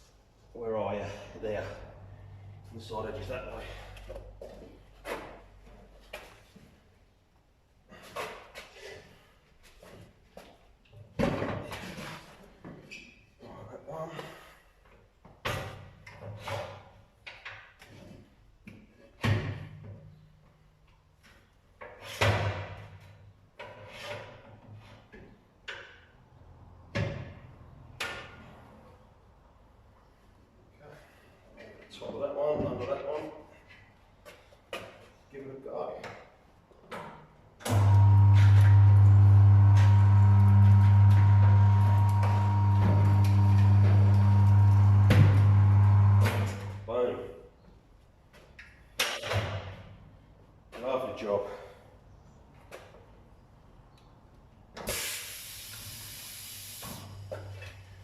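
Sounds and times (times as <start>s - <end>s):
heavy clunks on tyre machine: 37.7s - 46.8s
low hum: 37.7s - 46.9s.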